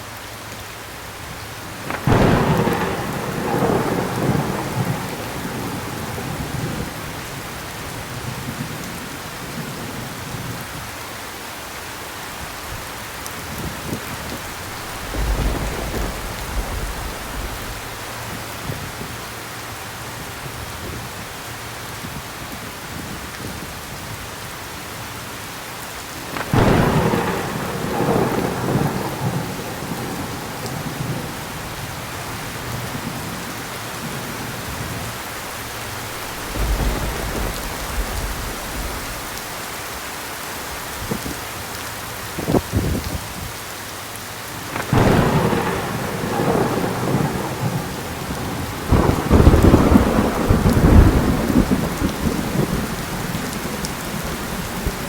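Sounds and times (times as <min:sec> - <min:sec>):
heavy rain falling: 0:00.0 - 0:55.0
thunder clap and rumble: 0:01.7 - 0:10.7, 0:12.6 - 0:19.4, 0:26.2 - 0:39.7, 0:44.6 - 0:55.0.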